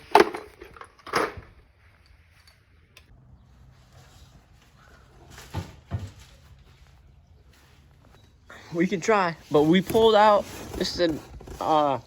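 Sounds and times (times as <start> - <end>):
motorcycle parts clunking: 0.0 - 1.6.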